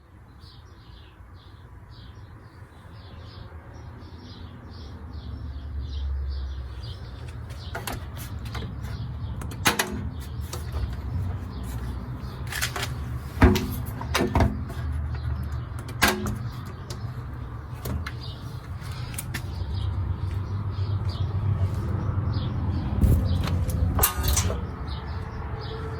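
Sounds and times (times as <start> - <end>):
washing machine rumble: 6.7 - 25.9
sharp knocks: 12.5 - 17.1.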